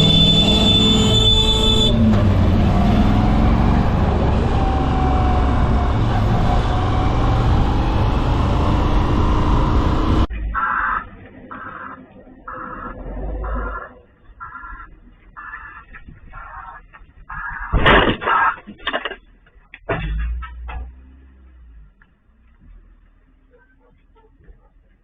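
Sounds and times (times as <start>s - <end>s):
traffic road and engine noise: 0.0s - 25.0s.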